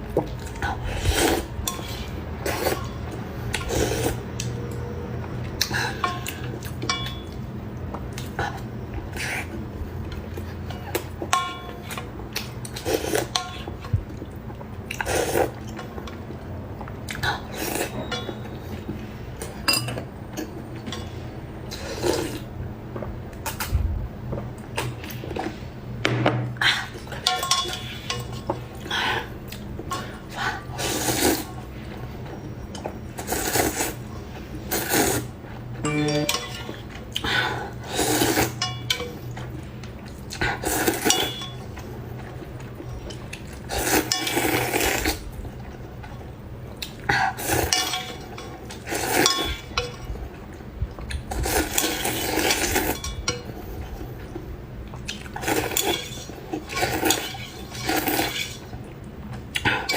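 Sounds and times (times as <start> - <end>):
utensils clinking on bowl: 5.6 - 7.5, 10.0 - 13.9, 17.6 - 21.2, 27.1 - 28.9, 35.8 - 37.2, 40.8 - 41.9, 47.4 - 50.2, 51.6 - 54.3, 55.4 - 58.6
slurping noodles: 30.7 - 31.5, 34.7 - 35.3, 37.7 - 38.6.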